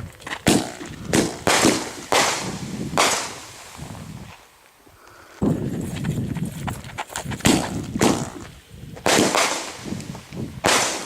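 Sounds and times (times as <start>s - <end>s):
fireworks crackling: 0.0s - 11.0s
fireworks bangs: 0.4s - 4.3s, 7.3s - 11.0s.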